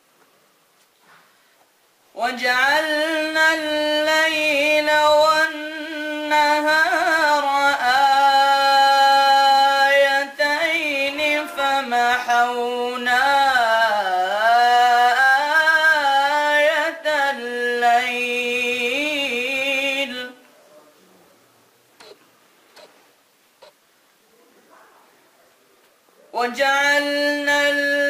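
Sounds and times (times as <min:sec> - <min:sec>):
boy reciting melodically: 0:02.1 - 0:20.5, 0:26.3 - 0:28.0.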